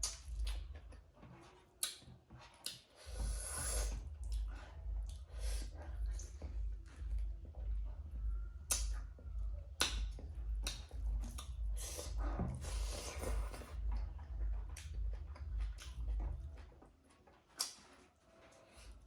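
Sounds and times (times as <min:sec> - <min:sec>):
wet smacks and clicks: 0:00.0 - 0:01.0, 0:01.8 - 0:03.2, 0:08.6 - 0:16.6, 0:17.5 - 0:18.0
chewing mouth sounds: 0:00.0 - 0:07.6, 0:08.6 - 0:16.7.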